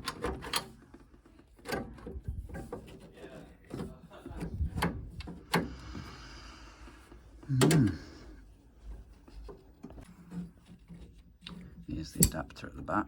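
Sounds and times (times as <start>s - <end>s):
clicks and knocks of tools: 0.0s - 3.1s, 9.4s - 12.6s.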